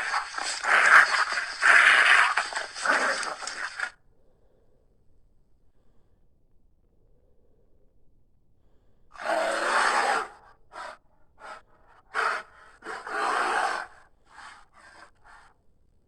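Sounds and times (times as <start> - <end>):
creature huffs and snorts: 0.0 - 3.9.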